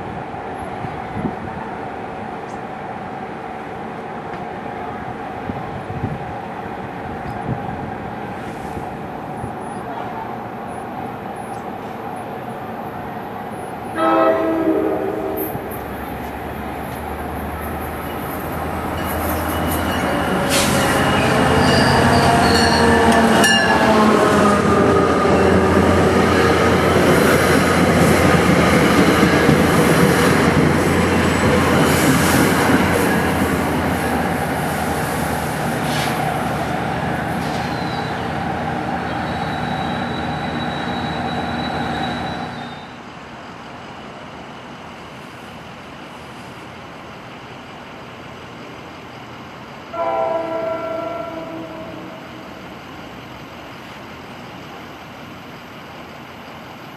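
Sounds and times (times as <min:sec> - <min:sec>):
train rail rumble: 0:03.6 - 0:56.9
high wheel squeals: 0:19.0 - 0:23.6, 0:37.4 - 0:38.3, 0:39.0 - 0:43.0.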